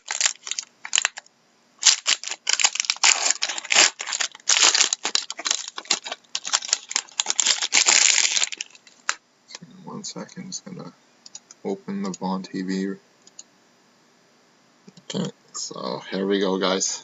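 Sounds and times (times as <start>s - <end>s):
wrapper tearing and crinkling: 0.0s - 1.2s, 1.8s - 9.2s.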